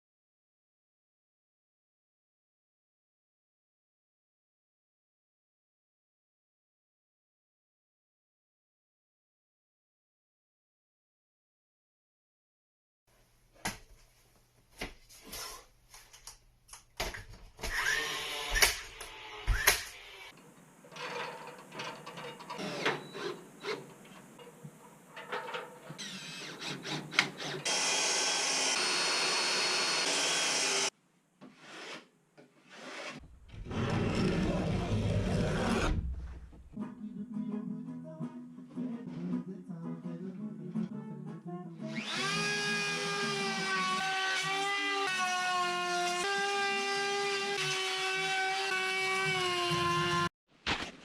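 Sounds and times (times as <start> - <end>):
power tool whine: 27.4 - 30.9, 42.0 - 45.3.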